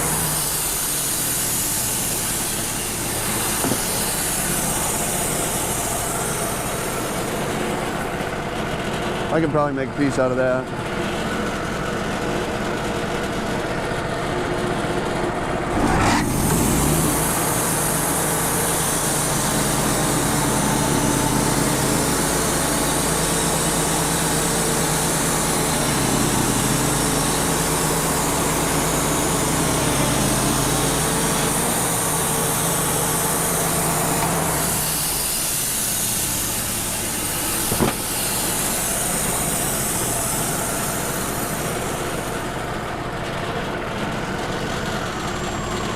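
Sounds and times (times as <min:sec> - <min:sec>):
band sawmill sawing log: 0:00.0 - 0:10.6, 0:14.7 - 0:45.9
single knock: 0:37.7 - 0:38.1.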